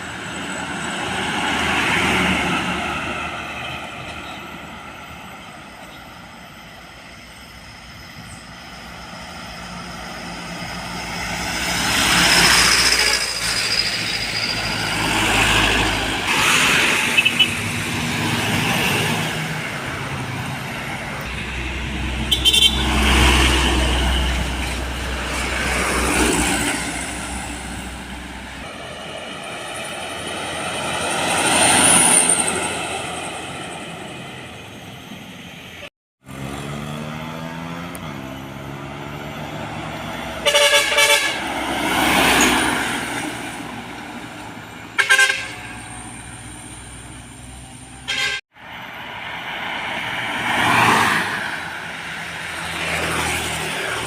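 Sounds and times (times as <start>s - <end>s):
heavy trucks passing: 0.0s - 54.0s
truck horn toots: 22.1s - 23.2s, 40.4s - 41.7s, 44.9s - 46.0s, 48.1s - 48.4s.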